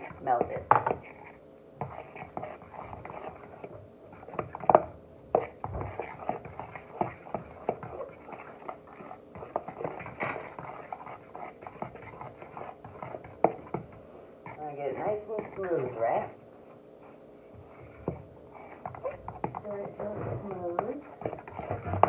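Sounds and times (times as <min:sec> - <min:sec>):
fork stirring batter in bowl: 0:00.0 - 0:16.4, 0:17.5 - 0:22.0
fork knocking against bowl: 0:10.0 - 0:10.8.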